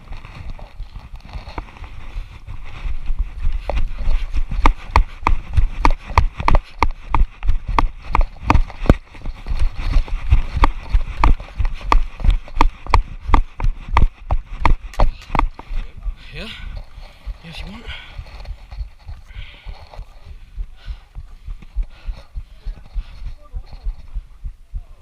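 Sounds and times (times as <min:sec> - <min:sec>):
jogging footsteps: 0:00.0 - 0:25.0.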